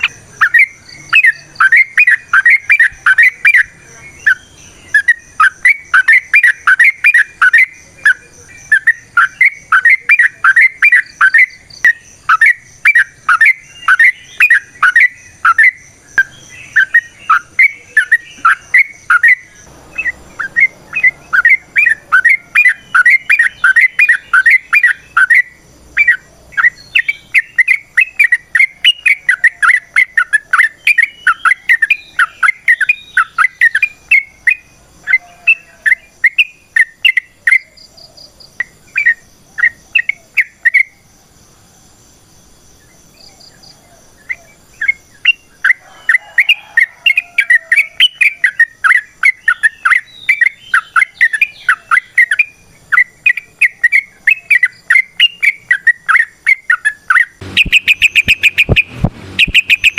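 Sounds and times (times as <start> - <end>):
bird singing repeated notes: 0.0 - 41.1, 42.8 - 46.6, 47.5 - 59.9.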